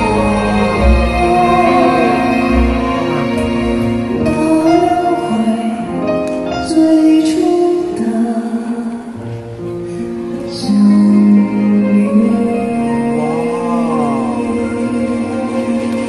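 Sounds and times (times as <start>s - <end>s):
man singing long held notes: 0.0s - 3.4s, 11.4s - 16.0s
instrumental accompaniment: 0.0s - 16.0s.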